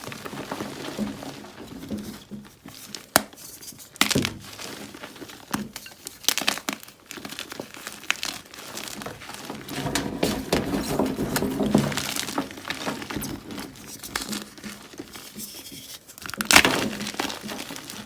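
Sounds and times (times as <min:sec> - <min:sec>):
crumbly chewing crunch: 0:04.0 - 0:09.6.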